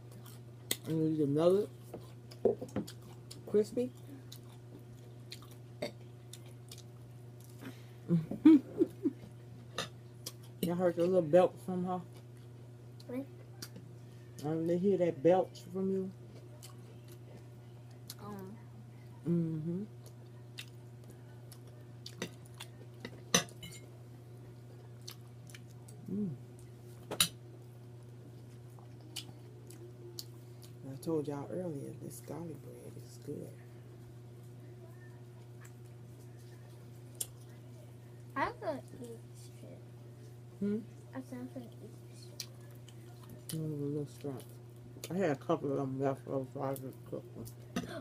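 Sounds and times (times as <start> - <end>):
chewing crispy food: 0.0 - 1.0, 1.7 - 7.8, 16.1 - 18.2, 19.8 - 23.2, 24.5 - 30.8, 33.9 - 38.3, 41.8 - 45.1
person humming: 19.2 - 19.9, 26.0 - 26.4, 40.6 - 40.9.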